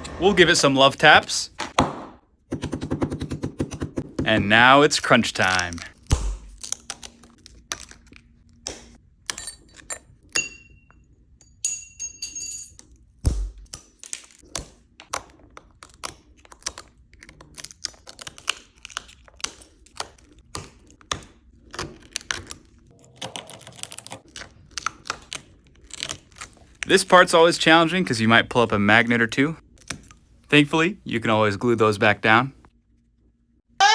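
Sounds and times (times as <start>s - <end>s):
cracked glass clicking and crackling: 5.5s - 8.3s.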